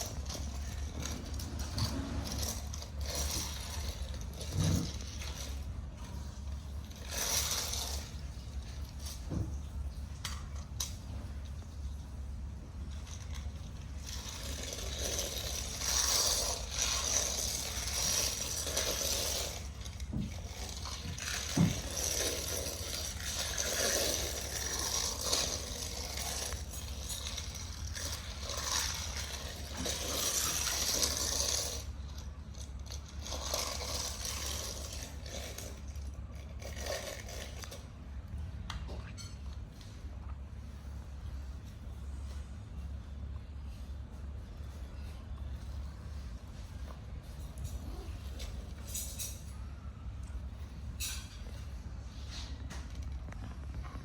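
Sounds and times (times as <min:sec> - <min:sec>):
toy vehicles clicking and rattling: 0:00.0 - 0:05.7, 0:06.8 - 0:09.2, 0:12.9 - 0:37.9.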